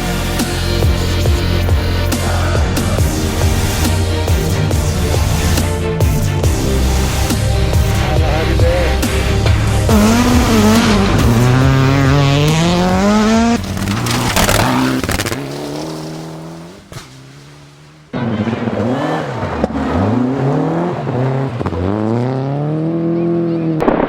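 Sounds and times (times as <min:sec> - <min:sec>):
rally car engines accelerating: 0:00.0 - 0:24.0.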